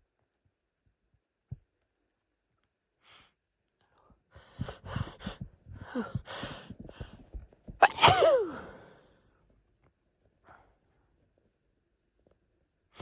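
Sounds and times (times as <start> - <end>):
woman sneezing loudly: 7.8 - 8.8
woman gasping in-breaths: 7.8 - 9.0.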